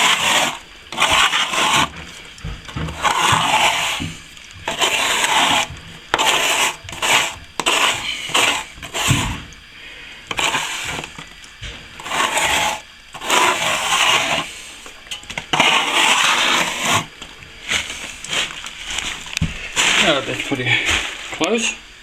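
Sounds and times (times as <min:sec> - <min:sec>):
trowel scraping plaster: 0:00.0 - 0:09.5, 0:10.3 - 0:11.2, 0:12.0 - 0:21.4.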